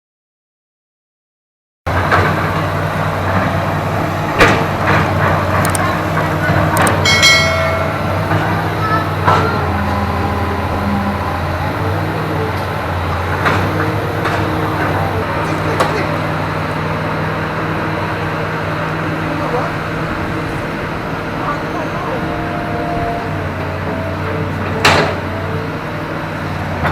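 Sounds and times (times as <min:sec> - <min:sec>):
excavator diesel engine running: 0:01.9 - 0:26.9
sharp metal clanks: 0:06.8 - 0:08.4.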